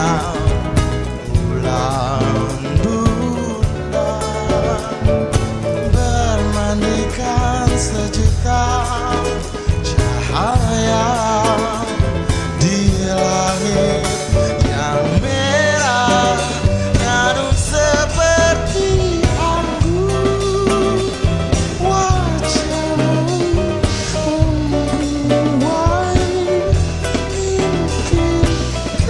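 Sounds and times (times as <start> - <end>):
bass notes: 0.0 - 29.0
guitar: 0.0 - 29.0
steady beat: 0.0 - 29.0.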